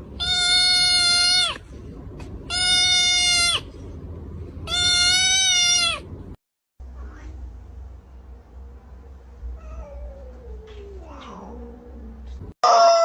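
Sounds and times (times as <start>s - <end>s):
animal crying: 0.2s - 1.6s, 2.5s - 3.7s, 4.6s - 6.1s.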